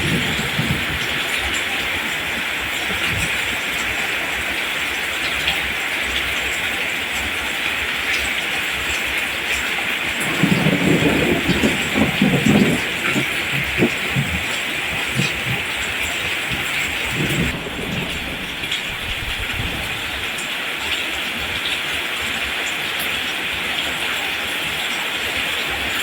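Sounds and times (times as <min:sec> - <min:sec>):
rain falling: 0:00.0 - 0:26.0
low rumbling: 0:10.2 - 0:20.4.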